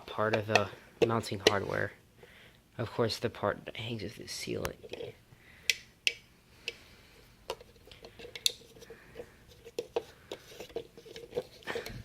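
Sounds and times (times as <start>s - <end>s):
faint steady hum: 0.0s - 12.0s
light clicks and taps of objects: 7.4s - 12.0s.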